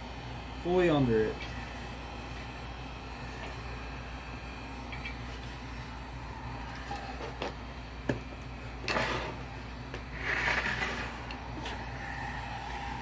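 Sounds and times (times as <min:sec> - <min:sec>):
heat gun blowing: 0:00.8 - 0:13.0
scraping: 0:08.8 - 0:13.0.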